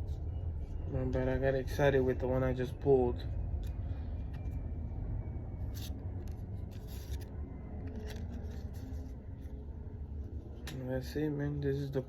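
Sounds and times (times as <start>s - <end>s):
cards rubbing and sliding: 5.7s - 9.6s.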